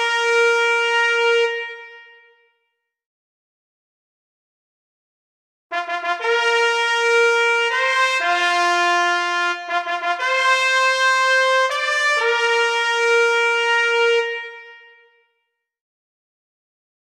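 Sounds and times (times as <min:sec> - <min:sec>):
trumpet fanfare: 0:00.0 - 0:02.1, 0:05.7 - 0:15.1.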